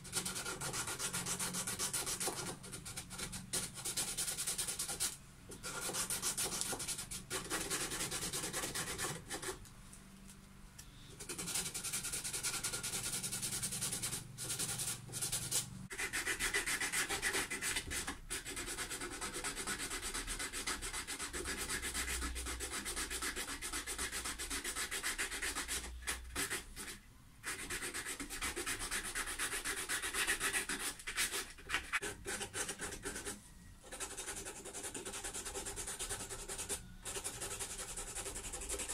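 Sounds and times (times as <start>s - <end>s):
sandpaper sanding wood: 27.5s - 33.3s.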